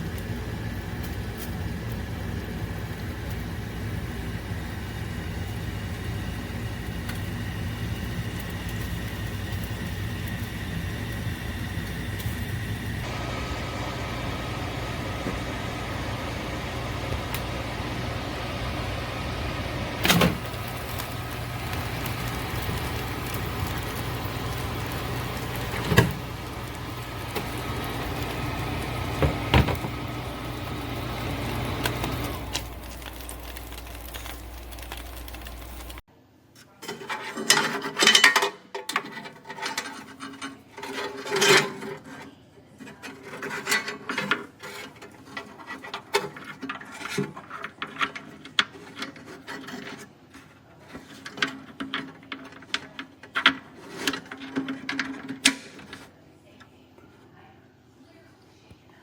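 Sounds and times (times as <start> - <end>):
steady mechanical hum: 0.0 - 59.0
objects scraping and clicking: 36.6 - 56.2.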